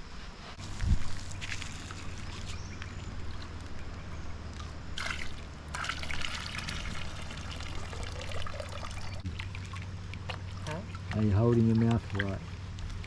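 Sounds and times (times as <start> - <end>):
small water splash: 4.6 - 13.0
water trickling and pouring: 4.6 - 13.0.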